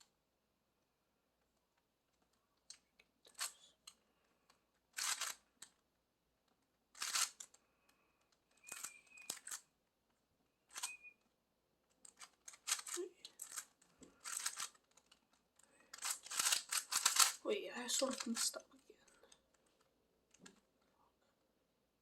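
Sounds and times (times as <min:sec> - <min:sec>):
puzzle cube clacking: 0:02.2 - 0:05.8, 0:06.4 - 0:09.8, 0:10.7 - 0:11.1, 0:11.8 - 0:18.6.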